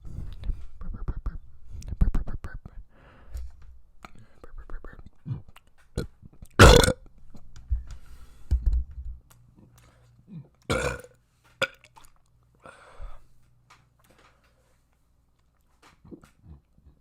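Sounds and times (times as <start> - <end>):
person burping loudly: 6.6 - 7.0, 10.7 - 11.8.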